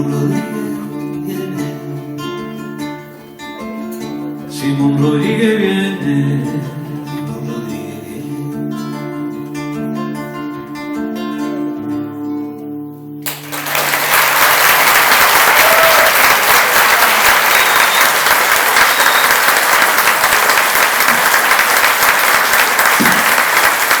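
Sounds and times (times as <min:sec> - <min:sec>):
audience applauding: 0:13.2 - 0:24.0.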